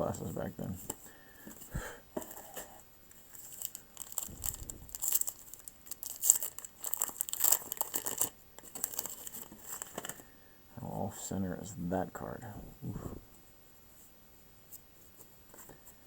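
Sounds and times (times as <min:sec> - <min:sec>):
wax paper wrapper crinkling and tearing: 0:03.3 - 0:10.2.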